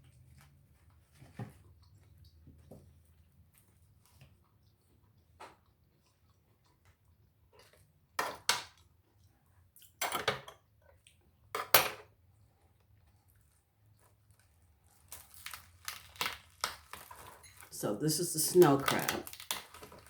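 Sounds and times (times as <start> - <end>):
utensils clacking on crab shells: 15.1 - 17.8, 18.6 - 20.0.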